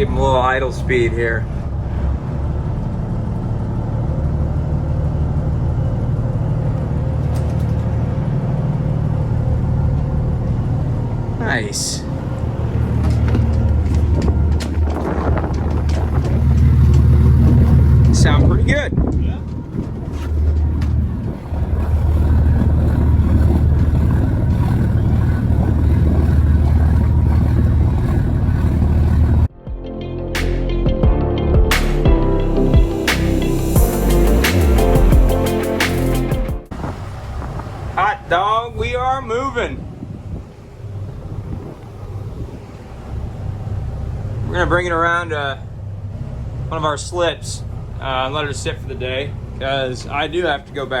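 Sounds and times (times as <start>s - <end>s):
diesel engines idling: 0.0s - 30.2s, 31.2s - 51.0s.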